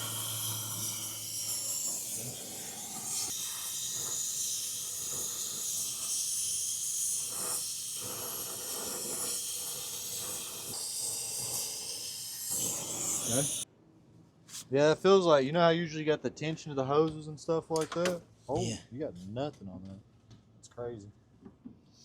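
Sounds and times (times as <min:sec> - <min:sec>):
brazing torch flame hissing: 0:00.0 - 0:13.7.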